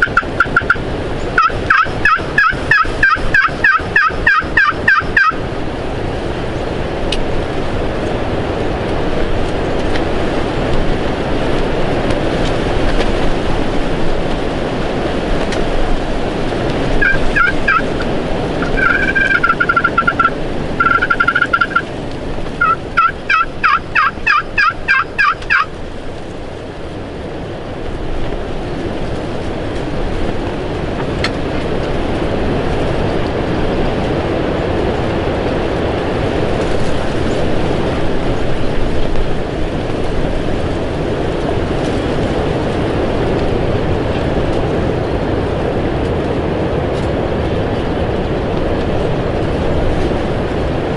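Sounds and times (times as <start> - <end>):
turkey yelping: 0.0 - 0.8, 1.4 - 5.4, 17.0 - 18.0, 18.6 - 21.9, 22.6 - 25.7
wind noise on microphone: 0.0 - 50.9.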